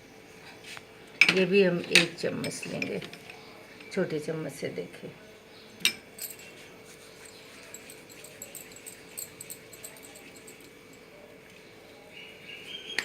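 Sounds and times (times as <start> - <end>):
light ticking and rustling: 7.2 - 11.0
spoon clinking against bowl: 7.2 - 11.0.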